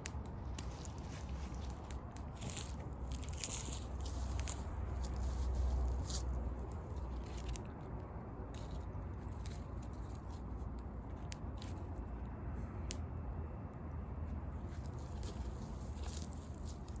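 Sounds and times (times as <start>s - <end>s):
wood fire crackling: 0.0s - 6.6s
low steady rumble: 0.0s - 17.0s.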